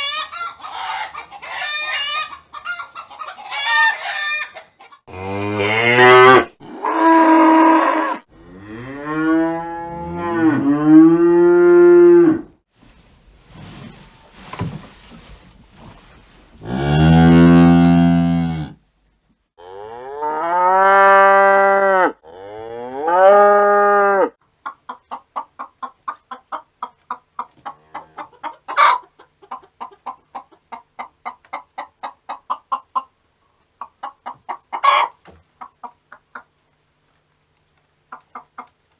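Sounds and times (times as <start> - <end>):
cattle mooing: 5.1 - 12.5, 16.6 - 18.8, 19.6 - 24.3.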